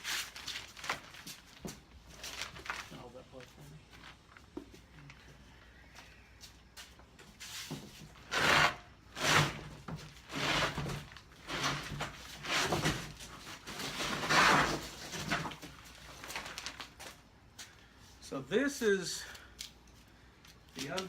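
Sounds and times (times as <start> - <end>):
cardboard box scraping: 8.2 - 15.6.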